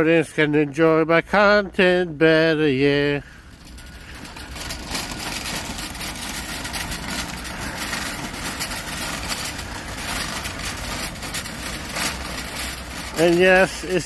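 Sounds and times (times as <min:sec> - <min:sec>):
shopping cart wheels rumbling: 0:00.0 - 0:14.0
wire baskets rattling: 0:03.0 - 0:14.0.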